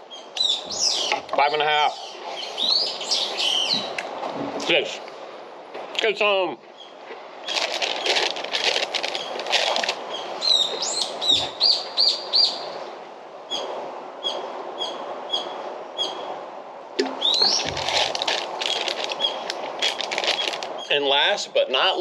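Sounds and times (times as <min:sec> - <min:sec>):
small songbird chirping: 0:00.1 - 0:04.0, 0:10.1 - 0:12.7, 0:17.1 - 0:17.8, 0:18.7 - 0:19.5.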